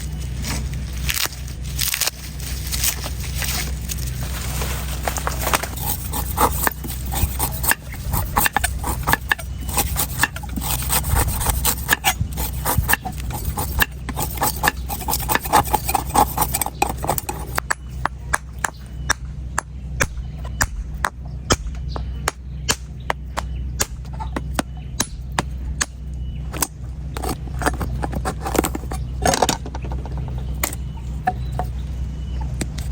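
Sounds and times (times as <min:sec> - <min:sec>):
steady low hum: 0:00.0 - 0:32.9
knife chopping coconut: 0:05.7 - 0:28.9.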